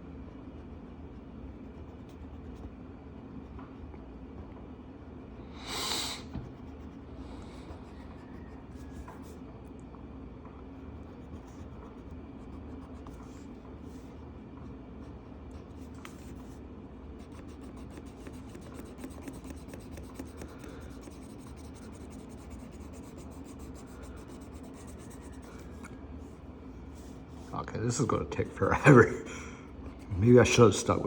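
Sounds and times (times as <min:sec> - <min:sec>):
pencil scratching on paper: 0:00.6 - 0:02.7, 0:15.0 - 0:25.8.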